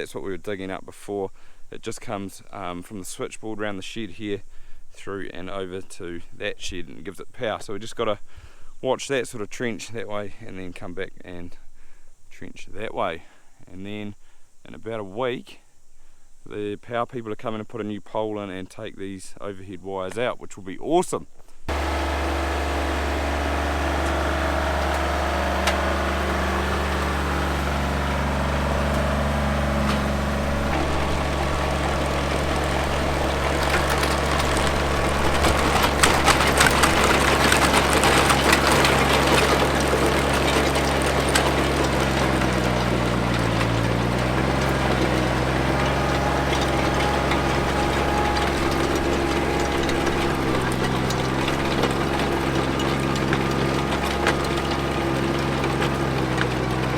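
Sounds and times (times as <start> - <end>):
trencher digging grinding rattling: 21.7 - 56.9
trencher engine running: 21.7 - 56.9.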